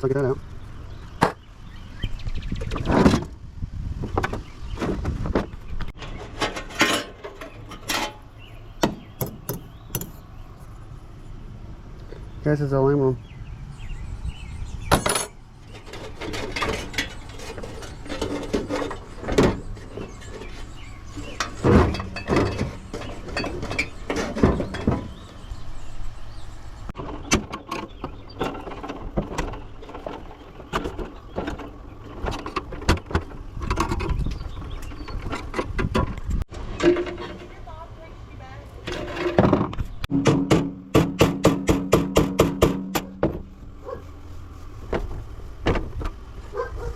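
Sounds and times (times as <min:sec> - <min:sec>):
metal parts and tools clanking: 0:05.8 - 0:10.3, 0:14.9 - 0:25.5, 0:26.9 - 0:37.8, 0:38.8 - 0:43.5.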